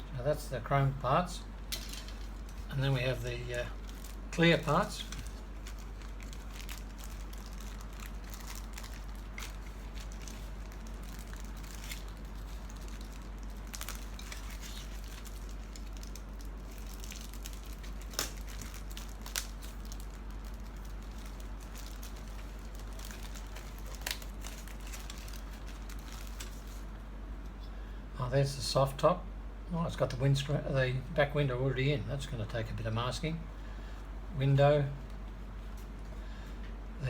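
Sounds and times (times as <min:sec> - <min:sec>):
steady low hum: 0:00.0 - 0:37.0
plastic bags crinkling: 0:01.7 - 0:26.9.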